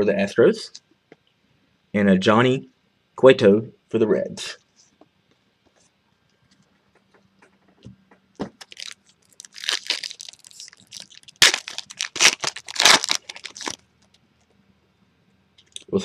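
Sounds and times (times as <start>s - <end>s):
foil wrapper tearing and crinkling: 8.6s - 13.8s.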